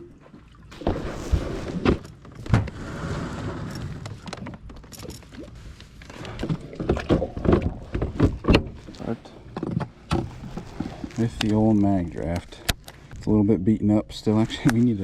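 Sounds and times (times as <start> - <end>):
knocks and light clatter: 6.4 - 11.5.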